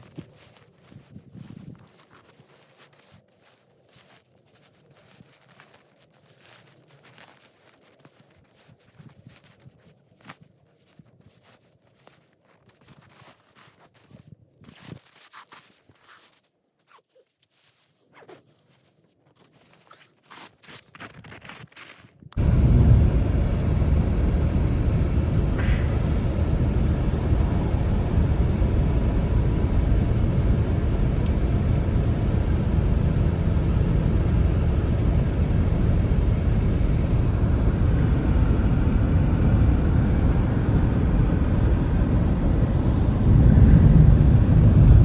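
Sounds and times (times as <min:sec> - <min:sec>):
strong snowstorm wind rumble: 0:22.4 - 0:45.0.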